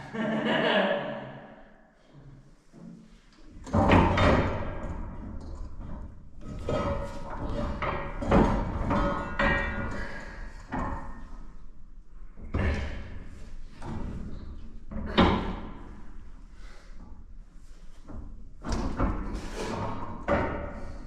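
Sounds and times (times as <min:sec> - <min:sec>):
metal clunks and scraping: 0:02.7 - 0:11.7, 0:12.3 - 0:21.0.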